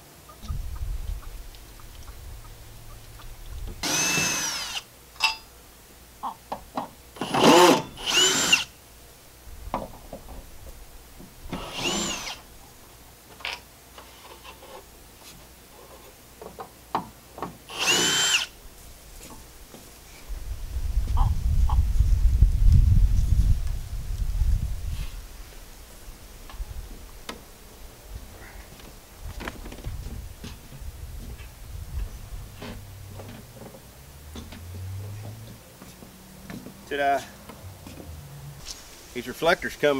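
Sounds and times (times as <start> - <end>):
power drill whine: 3.8 - 4.9, 7.2 - 8.7, 11.5 - 12.4, 17.7 - 18.5.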